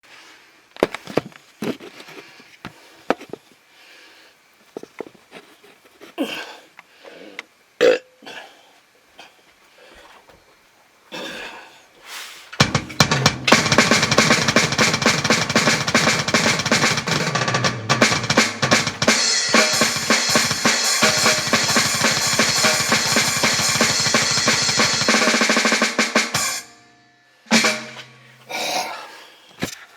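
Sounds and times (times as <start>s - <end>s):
drum kit played hard: 12.6s - 26.7s, 27.5s - 28.4s.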